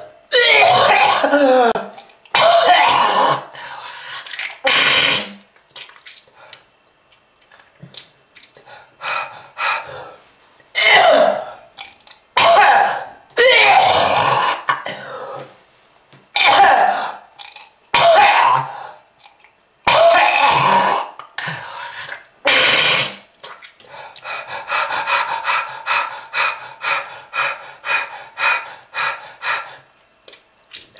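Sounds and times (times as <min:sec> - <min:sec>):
person clearing throat: 0:00.0 - 0:03.5, 0:10.8 - 0:11.5, 0:16.4 - 0:17.2, 0:19.9 - 0:21.2
person coughing: 0:00.0 - 0:03.5, 0:10.8 - 0:11.5.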